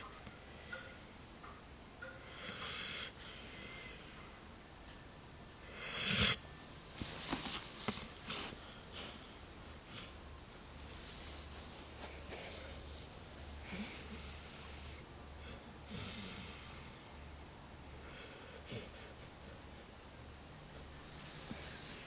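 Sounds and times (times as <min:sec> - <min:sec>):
dog snoring: 0:05.7 - 0:06.4, 0:13.6 - 0:15.0, 0:15.8 - 0:17.0.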